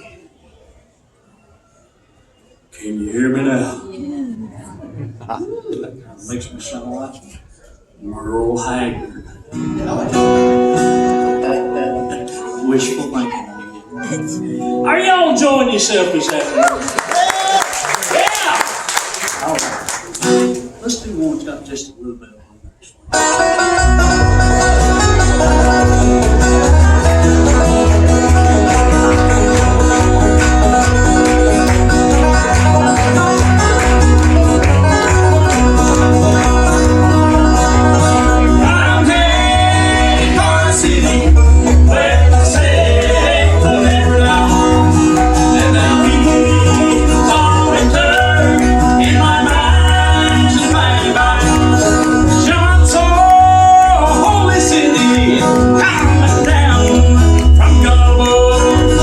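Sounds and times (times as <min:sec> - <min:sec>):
bluegrass band playing: 0:08.6 - 0:15.9, 0:19.8 - 0:21.4, 0:23.1 - 0:59.0
banjo: 0:23.1 - 0:59.0
bass line: 0:23.2 - 0:59.0.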